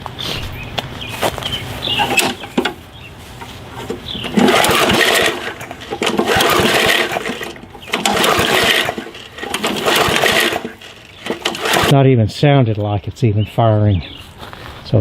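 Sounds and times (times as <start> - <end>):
lawn mower engine pull-starting: 1.1 - 12.0.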